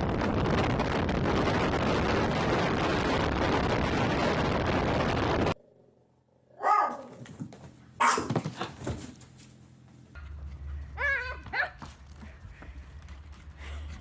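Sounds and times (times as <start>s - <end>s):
dog barking: 6.6s - 7.2s, 8.0s - 8.4s, 11.0s - 11.8s
dog whining: 11.0s - 11.8s.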